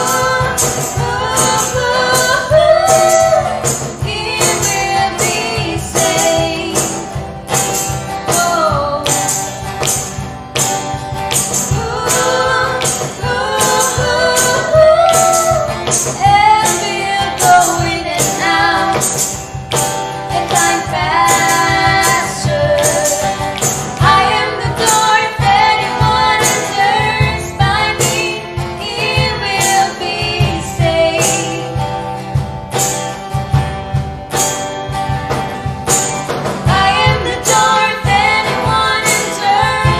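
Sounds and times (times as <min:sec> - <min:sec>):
woman singing: 0:00.0 - 0:07.2, 0:08.2 - 0:09.6, 0:11.6 - 0:19.5, 0:20.2 - 0:32.0, 0:36.6 - 0:39.9
band playing: 0:00.0 - 0:39.9.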